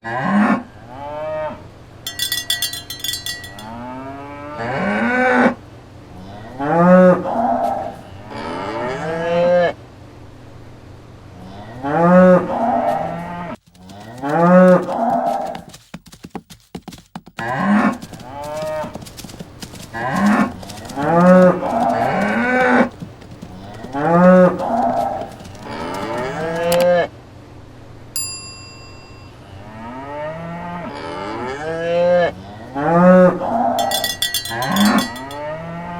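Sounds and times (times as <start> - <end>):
bell jingling: 2.1 - 3.8, 17.9 - 26.8, 28.2 - 29.4, 33.8 - 35.5
short ringing tone: 2.1 - 3.8, 28.2 - 29.6
cattle mooing: 6.2 - 9.6, 19.8 - 26.8.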